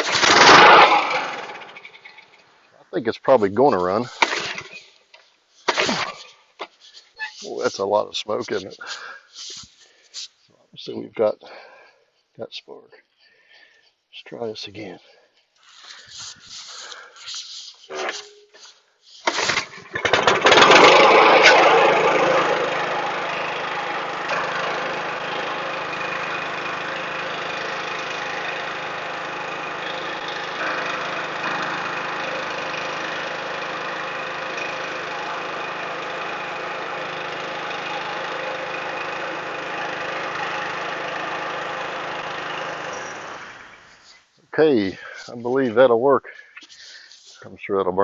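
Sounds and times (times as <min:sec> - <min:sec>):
lawn mower engine running: 0:00.0 - 0:02.4, 0:03.5 - 0:09.5, 0:15.7 - 0:44.1.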